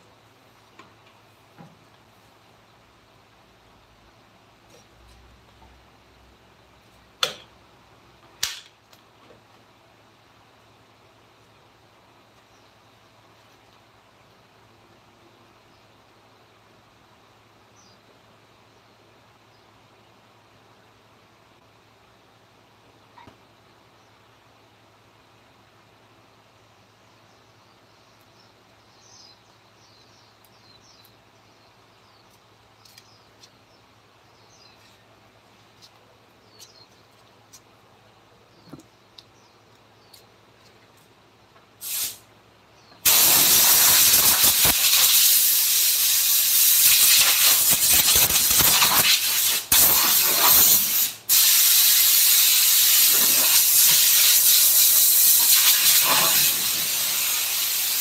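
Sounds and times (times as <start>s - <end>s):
loud steady air hiss: 41.7s - 58.0s.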